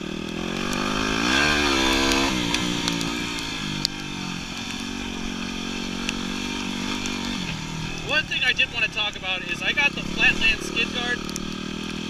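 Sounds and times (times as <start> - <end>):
motorcycle engine revving: 0.0 - 12.0
sharp clicks: 0.2 - 5.0, 11.2 - 12.0.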